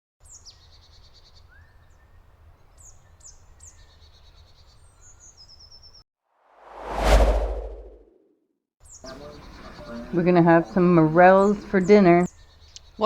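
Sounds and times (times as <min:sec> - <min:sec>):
birds singing trills: 0:00.2 - 0:06.0, 0:08.8 - 0:13.0
faint low rumble: 0:06.6 - 0:08.0.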